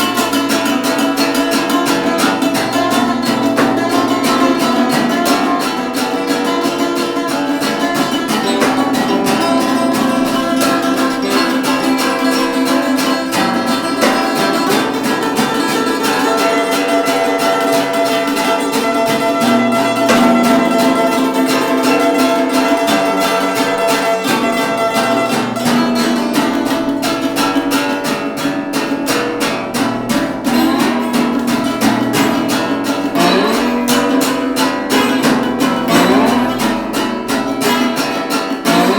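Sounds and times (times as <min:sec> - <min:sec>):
acoustic blues band playing: 0:00.0 - 0:38.9.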